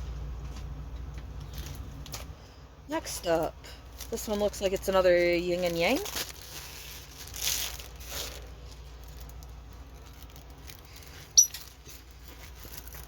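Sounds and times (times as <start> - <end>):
package rustling: 3.9 - 13.0.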